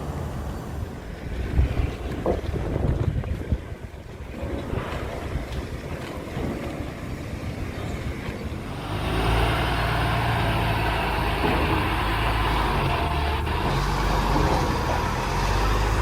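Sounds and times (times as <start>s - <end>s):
machine engine humming: 8.2s - 16.0s.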